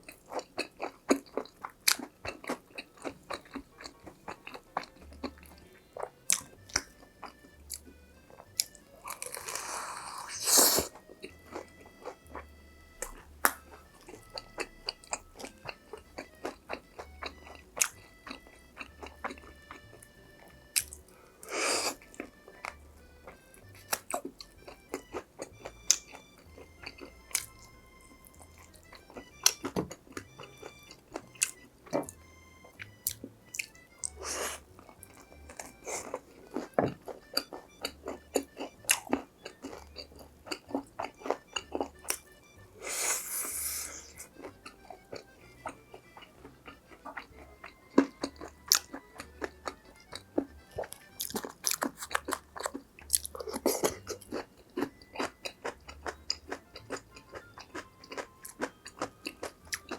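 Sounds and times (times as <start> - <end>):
chewing crispy fried food: 0.0 - 59.9
quiet background music: 0.0 - 59.9.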